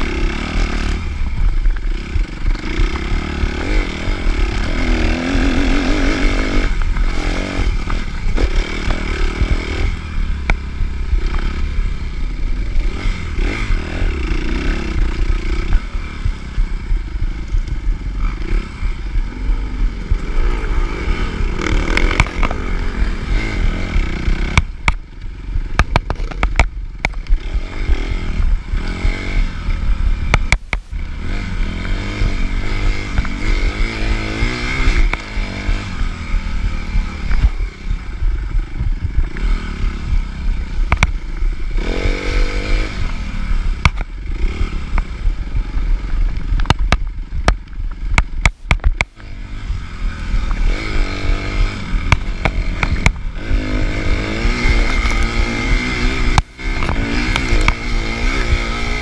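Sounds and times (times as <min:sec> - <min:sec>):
motorcycle engine revving: 0:00.0 - 0:59.0
sharp clicks and knocks: 0:21.6 - 0:22.8, 0:23.9 - 0:28.0, 0:29.7 - 0:31.0, 0:40.8 - 0:41.5, 0:43.0 - 0:44.2, 0:45.8 - 0:49.3, 0:50.4 - 0:59.0.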